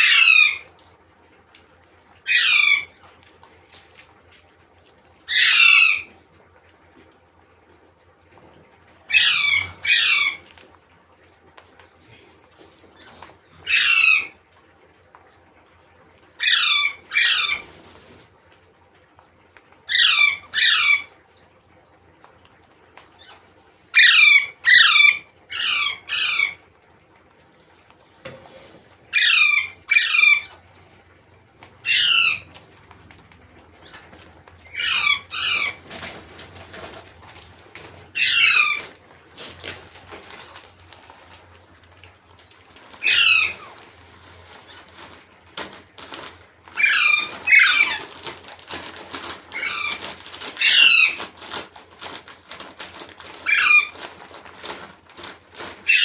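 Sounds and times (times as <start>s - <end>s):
parrot screeching: 0.0s - 0.7s, 2.2s - 3.0s, 5.3s - 6.1s, 9.1s - 10.5s, 13.6s - 14.4s, 16.4s - 17.7s, 19.9s - 21.1s, 23.2s - 26.6s, 29.1s - 30.6s, 31.8s - 32.5s, 34.6s - 36.0s, 38.1s - 38.9s, 43.0s - 43.8s, 46.7s - 48.4s, 49.2s - 51.3s, 53.2s - 54.2s, 55.8s - 56.0s.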